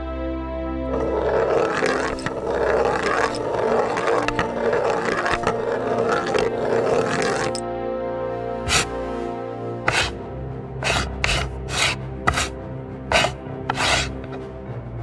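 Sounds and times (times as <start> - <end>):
chess pieces clattering: 0.9 - 7.6, 9.9 - 10.2, 10.8 - 12.5, 13.1 - 14.4.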